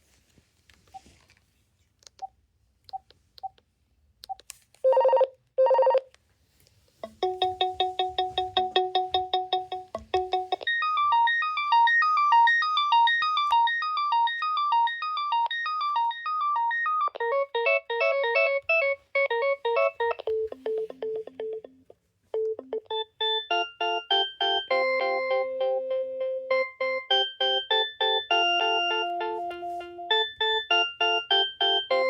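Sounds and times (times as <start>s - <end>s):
electronic ringtone melodies: 7.0s - 32.0s.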